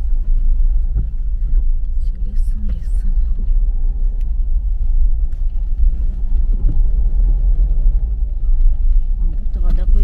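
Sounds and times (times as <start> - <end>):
car driving on dirt road: 0.0 - 10.0.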